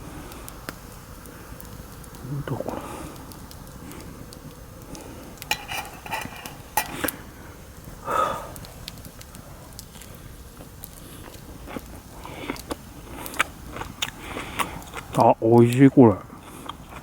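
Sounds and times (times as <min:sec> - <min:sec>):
metal cookware clinking: 0:05.4 - 0:07.1.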